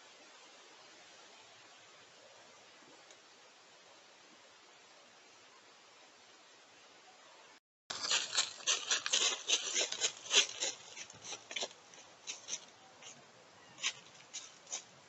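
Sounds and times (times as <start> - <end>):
rustling and scratching: 7.9 - 15.0.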